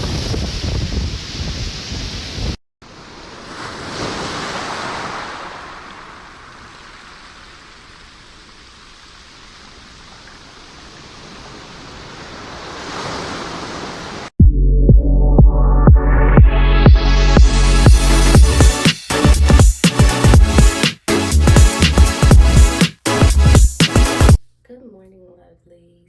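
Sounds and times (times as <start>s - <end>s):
ocean waves washing in: 0.0s - 14.4s.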